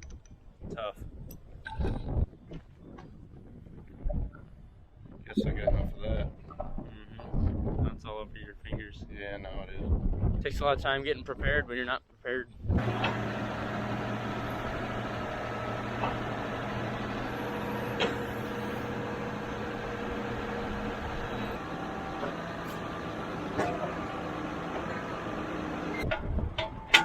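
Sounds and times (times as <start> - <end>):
vehicle engine running: 12.8 - 26.6.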